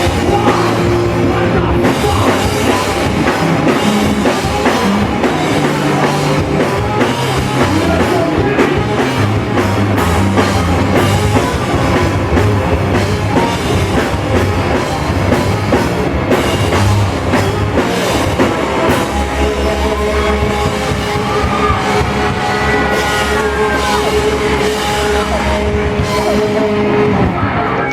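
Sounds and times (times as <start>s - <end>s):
held bending guitar notes: 0.0s - 27.8s
loud rock music: 0.0s - 27.9s.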